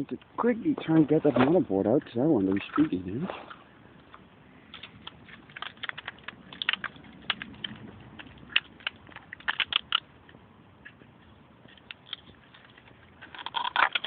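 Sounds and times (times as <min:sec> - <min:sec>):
plastic clicking and cracking: 0:04.1 - 0:11.0, 0:11.7 - 0:14.0.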